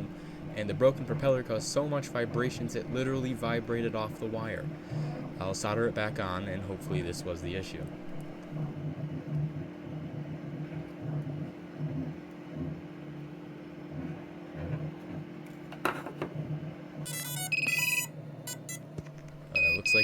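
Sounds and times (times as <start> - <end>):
low steady hum: 0.0 - 20.0
electronic startup beeps: 17.1 - 18.8.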